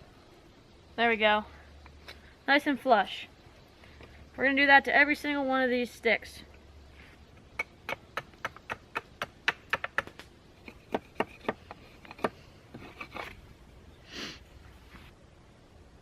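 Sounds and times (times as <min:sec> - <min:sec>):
sharp wooden clicks and knocks: 0:07.3 - 0:13.4
knife scraping wood: 0:10.6 - 0:13.5.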